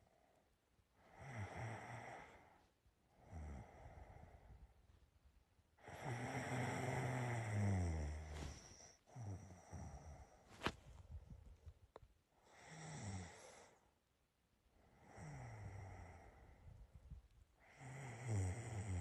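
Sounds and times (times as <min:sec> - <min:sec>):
person snoring: 0:05.8 - 0:10.3, 0:12.6 - 0:13.8, 0:15.0 - 0:16.6, 0:17.6 - 0:19.0.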